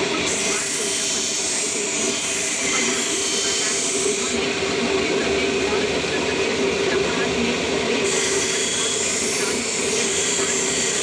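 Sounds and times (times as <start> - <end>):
sharpening wheel motor hum: 0.0 - 5.2, 7.8 - 11.0
blade grinding hiss: 0.3 - 4.4, 8.0 - 11.0.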